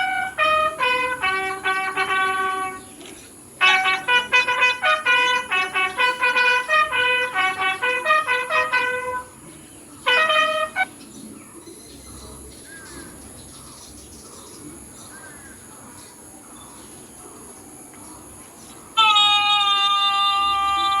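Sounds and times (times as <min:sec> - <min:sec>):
bugle held note: 0:00.0 - 0:09.4, 0:10.0 - 0:10.9, 0:19.0 - 0:21.0.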